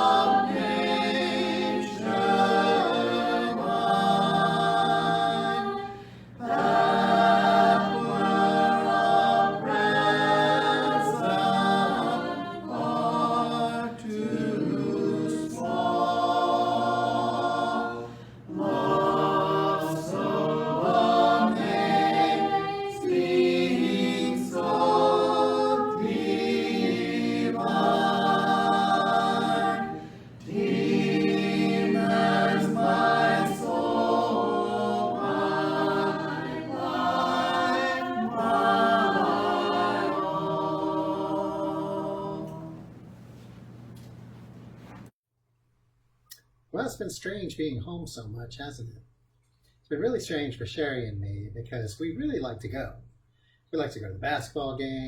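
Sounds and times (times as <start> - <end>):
a cappella choir singing hymn: 0.0 - 43.1.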